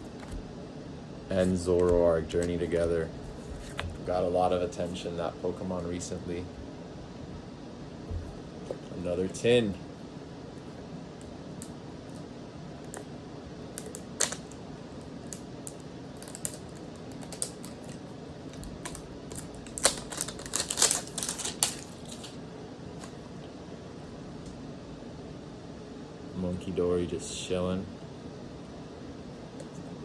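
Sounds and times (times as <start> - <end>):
crinkly clicks: 13.7 - 22.4.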